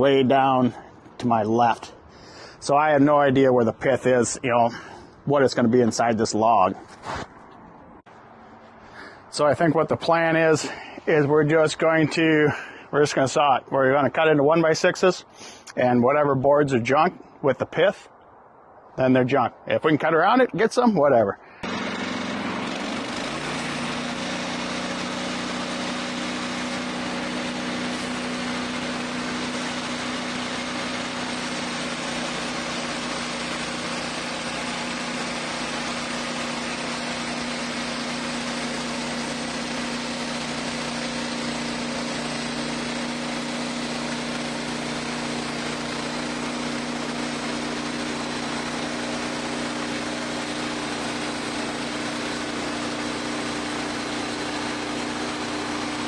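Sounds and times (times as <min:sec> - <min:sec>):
sawmill engine running: 0:21.6 - 0:56.0.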